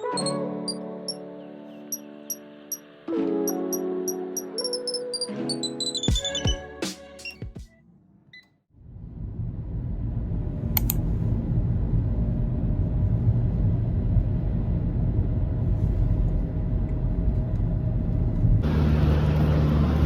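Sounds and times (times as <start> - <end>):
vehicle rumble in motion: 8.8 - 20.0.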